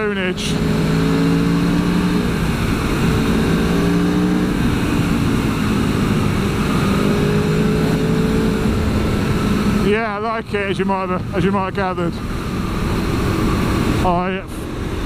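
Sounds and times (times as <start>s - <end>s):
motorcycle engine accelerating: 0.0s - 15.0s
wind rush on microphone: 0.6s - 15.0s.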